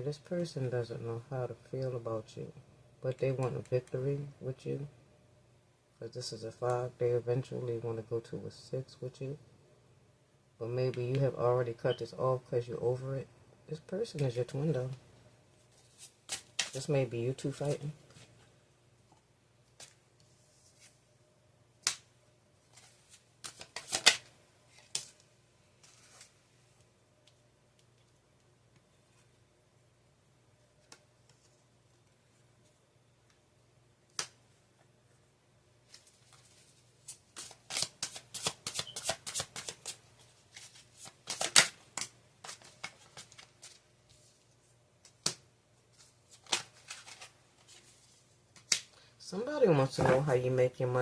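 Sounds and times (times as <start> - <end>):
cards shuffling and slapping: 15.7 - 16.9, 19.7 - 20.0, 22.7 - 26.4, 35.9 - 44.3, 45.0 - 49.0.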